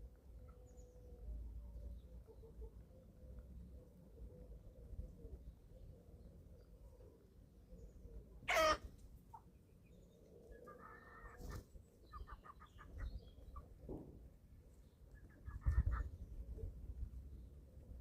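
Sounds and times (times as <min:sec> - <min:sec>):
chickens calling: 0:06.6 - 0:16.7
chickens clucking: 0:06.6 - 0:16.9.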